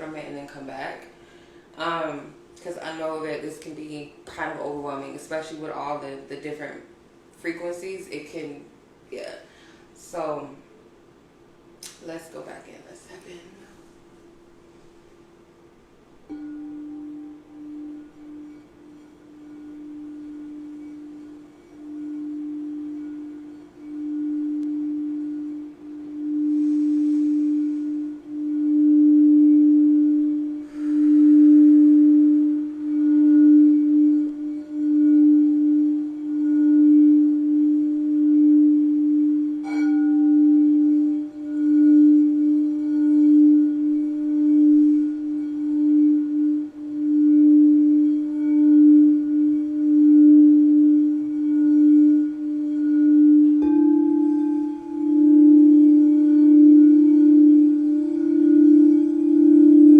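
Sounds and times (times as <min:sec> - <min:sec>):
singing bowl low tone: 0:16.2 - 0:59.9.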